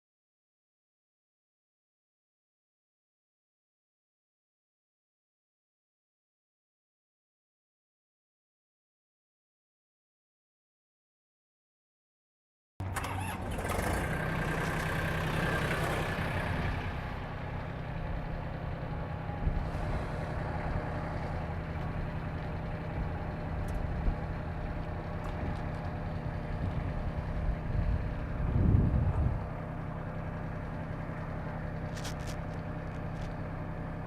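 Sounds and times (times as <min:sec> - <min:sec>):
tractor diesel engine running: 0:12.8 - 0:34.0.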